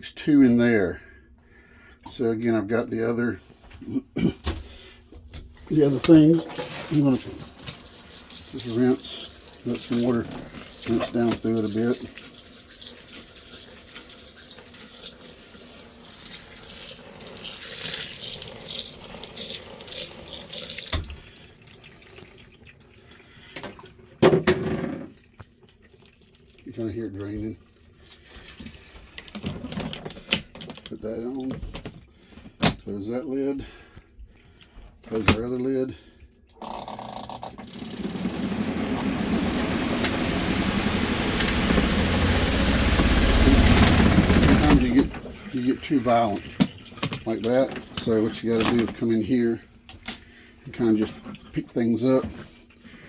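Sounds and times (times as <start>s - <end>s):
water running through wet clothes: 5.7s - 24.2s
spin-dryer motor whirring: 37.6s - 45.4s.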